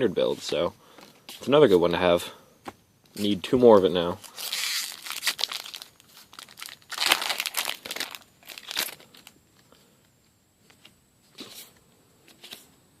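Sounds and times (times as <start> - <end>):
foil wrapper crinkling: 4.1 - 9.4.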